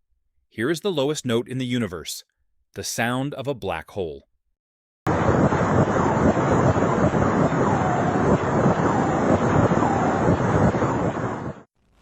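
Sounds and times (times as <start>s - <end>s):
dense rushing noise: 5.1s - 11.7s
faint wavering whistles: 7.5s - 11.0s.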